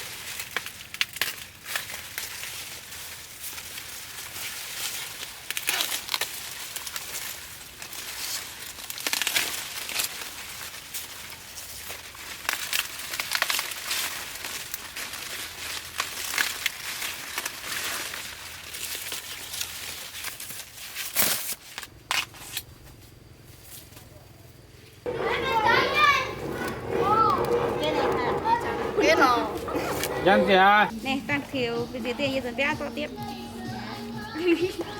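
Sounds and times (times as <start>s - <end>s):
dry corn leaves rustling: 0.0s - 24.2s.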